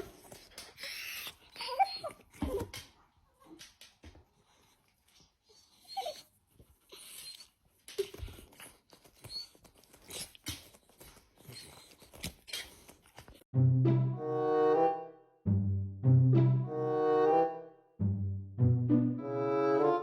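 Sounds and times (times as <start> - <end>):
dog whimpering: 0.8 - 2.8, 5.5 - 10.6.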